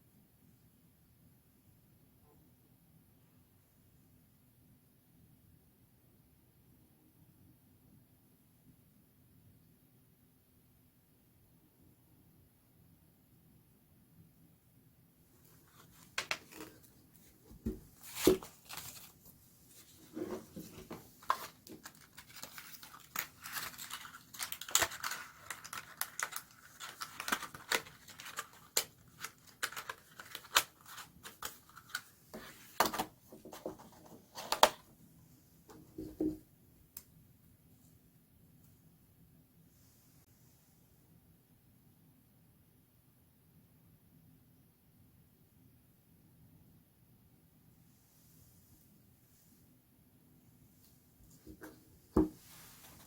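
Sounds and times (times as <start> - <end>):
packaging crinkling and tearing: 18.0 - 19.2, 20.6 - 32.1.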